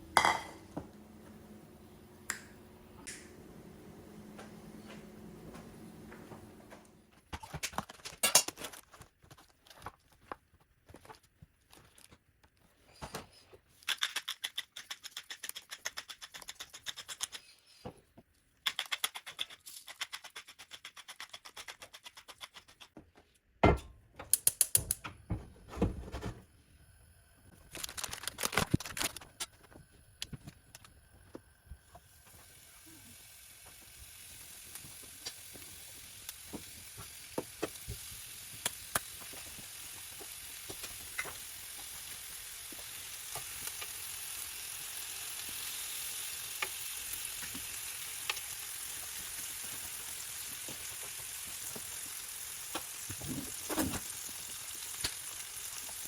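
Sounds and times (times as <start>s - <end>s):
frying pan sizzling: 0.0s - 6.7s, 27.0s - 56.0s.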